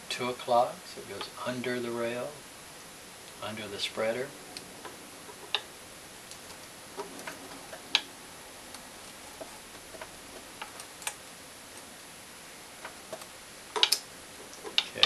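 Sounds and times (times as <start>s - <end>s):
metallic clicks and ticks: 12.8s - 15.0s.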